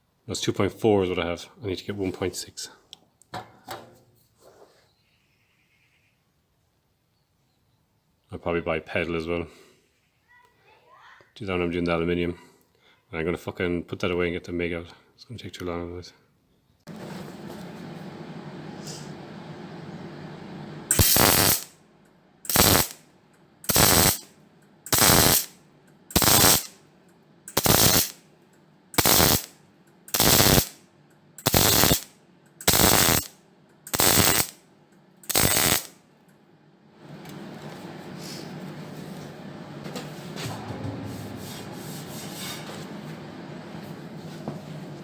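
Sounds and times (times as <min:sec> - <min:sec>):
welder crackling bursts: 0:20.9 - 0:21.8, 0:22.5 - 0:24.3, 0:24.9 - 0:26.8, 0:27.5 - 0:28.2, 0:28.9 - 0:30.8, 0:31.4 - 0:34.6, 0:35.2 - 0:36.0.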